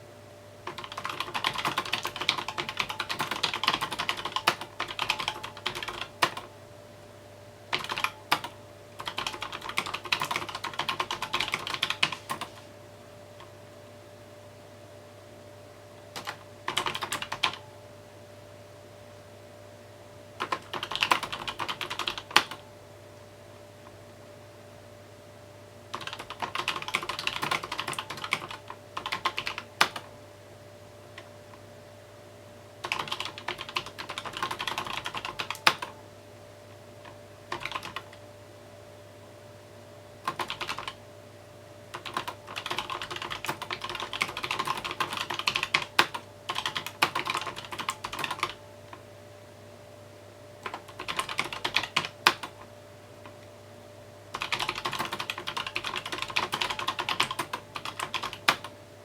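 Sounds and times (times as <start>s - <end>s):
faint steady hum: 0.0s - 59.0s
typing on mechanical keyboard: 0.7s - 6.5s, 7.7s - 12.6s, 16.1s - 17.6s, 20.4s - 22.6s, 25.9s - 30.1s, 32.8s - 36.0s, 37.0s - 38.2s, 40.2s - 41.0s, 41.9s - 48.6s, 50.6s - 52.6s, 54.3s - 58.7s.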